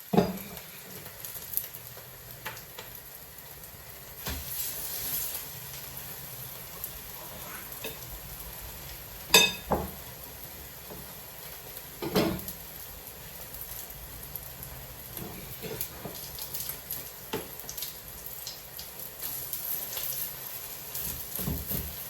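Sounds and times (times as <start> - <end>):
food sizzling in hot oil: 0.0 - 22.0
knock on pan: 0.1 - 0.4, 9.3 - 10.0.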